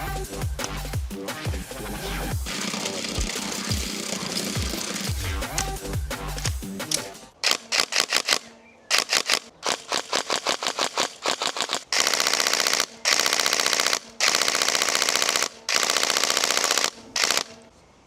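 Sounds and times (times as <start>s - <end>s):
music: 0.0s - 7.7s
airsoft gun firing: 2.4s - 5.2s, 7.4s - 17.6s.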